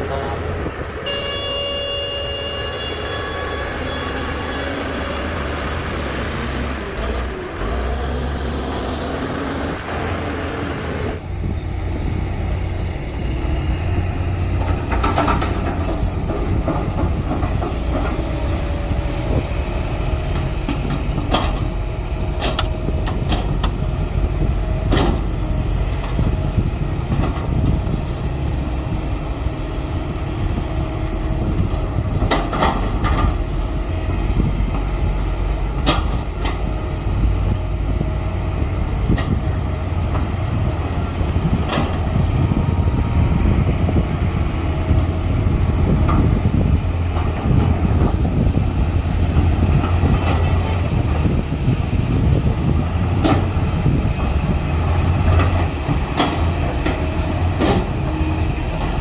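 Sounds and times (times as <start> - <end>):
diesel machinery engine rumble: 0.0 - 59.0
metallic clanks and knocks: 14.6 - 18.2, 22.4 - 23.8.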